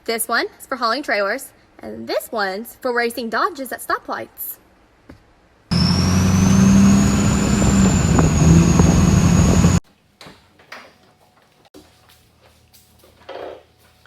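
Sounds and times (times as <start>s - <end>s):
high turbo whistle: 5.7s - 9.8s
pickup engine under hard throttle: 5.7s - 9.8s.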